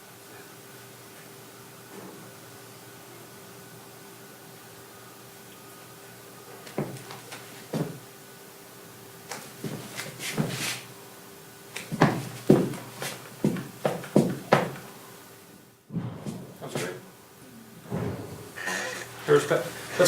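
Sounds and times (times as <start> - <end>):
foley knocks and thuds: 15.9 - 16.6, 17.8 - 18.6.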